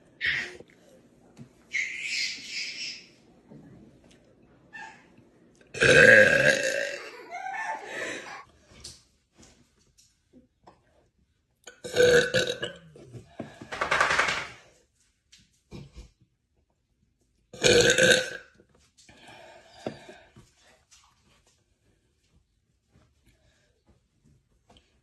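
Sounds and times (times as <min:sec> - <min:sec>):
woman burping: 0:05.7 - 0:07.2, 0:11.7 - 0:13.0, 0:17.6 - 0:18.4.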